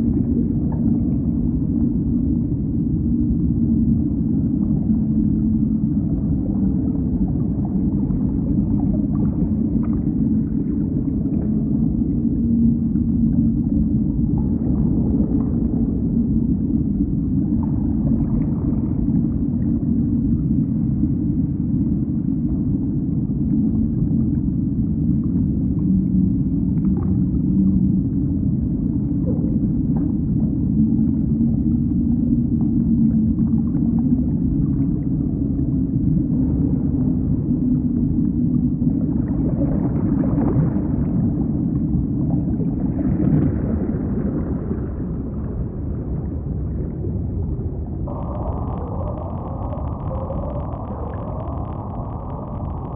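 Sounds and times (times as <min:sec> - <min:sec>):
faint whale-like calls: 0:00.0 - 0:52.9
low hum: 0:00.0 - 0:52.9
underwater low rumble: 0:00.0 - 0:52.9.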